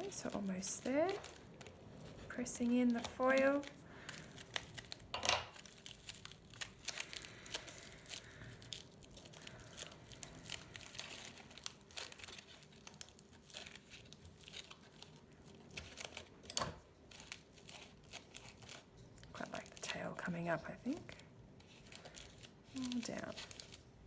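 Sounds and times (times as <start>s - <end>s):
aluminium foil crinkling: 0.0s - 24.0s.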